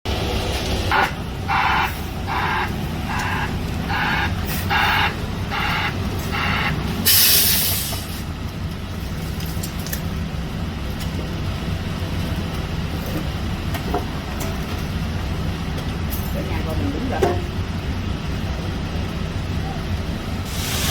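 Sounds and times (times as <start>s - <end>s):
truck engine running: 0.0s - 20.9s
hissing reversing alarm: 0.9s - 7.9s
air-brake hiss: 0.9s - 8.3s, 20.4s - 20.9s.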